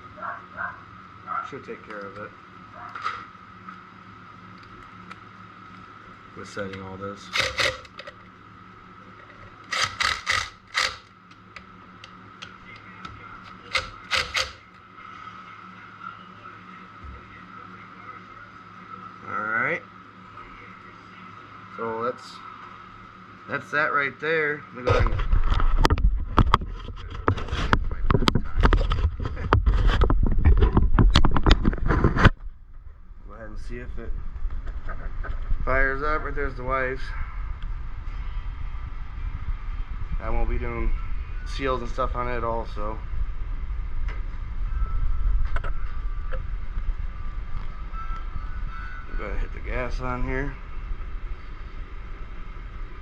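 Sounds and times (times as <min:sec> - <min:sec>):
faint whine: 0:00.0 - 0:53.0
tools and parts clacking: 0:07.3 - 0:08.2, 0:13.5 - 0:14.7
low rumble: 0:31.8 - 0:53.0.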